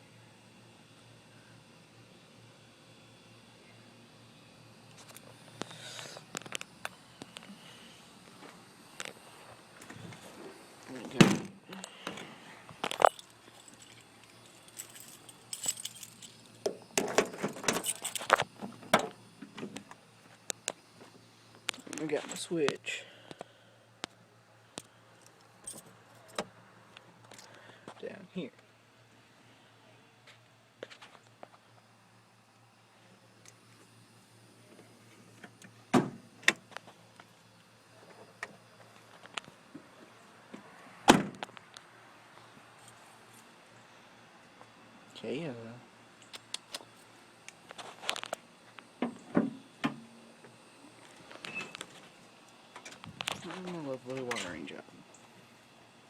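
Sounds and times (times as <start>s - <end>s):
clinking and rattling: 12.9s - 16.4s, 17.0s - 18.4s.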